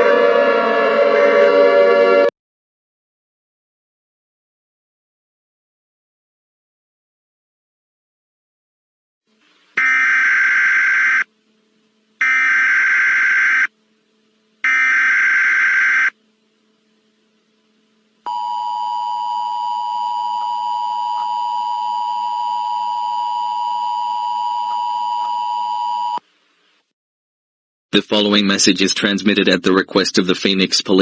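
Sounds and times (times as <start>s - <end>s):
screeching data bursts: 9.8s - 11.3s.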